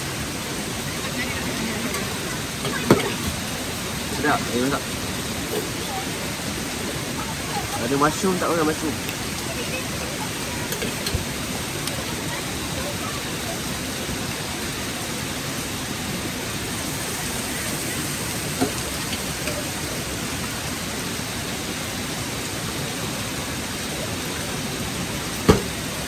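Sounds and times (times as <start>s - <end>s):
steady rain falling: 0.0s - 26.0s
sharp knock: 25.5s - 25.8s.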